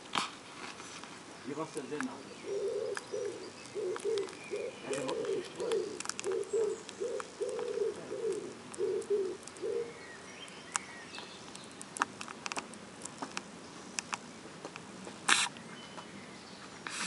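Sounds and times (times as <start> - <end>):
dove cooing: 2.4 - 10.2
tortoise beak clicking: 2.8 - 9.8
tortoise sneezing: 15.3 - 15.6.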